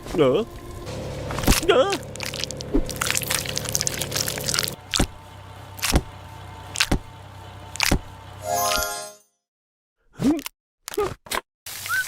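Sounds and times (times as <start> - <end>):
low hum: 0.4 - 8.4.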